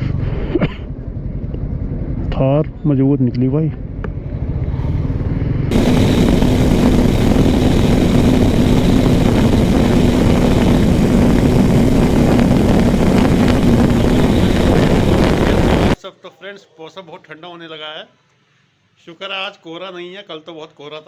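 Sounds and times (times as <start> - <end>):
wind rush: 5.2 - 16.0.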